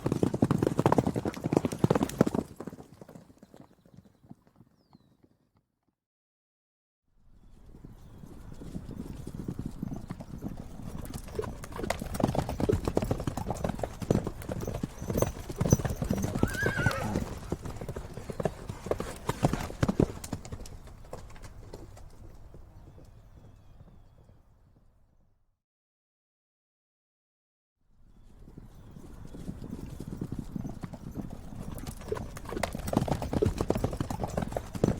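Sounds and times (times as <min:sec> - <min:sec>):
horse hooves clip-clopping: 0:00.0 - 0:05.5, 0:07.4 - 0:24.9, 0:28.1 - 0:34.9
horse whinny: 0:15.7 - 0:17.6.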